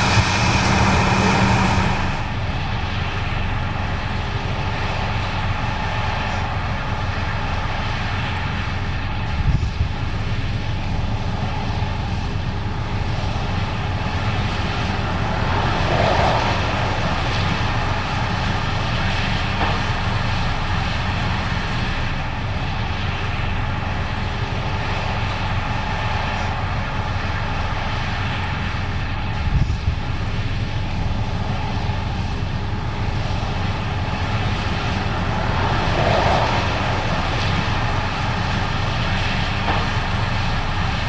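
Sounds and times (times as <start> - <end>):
combine harvester engine drone: 0.0 - 41.0.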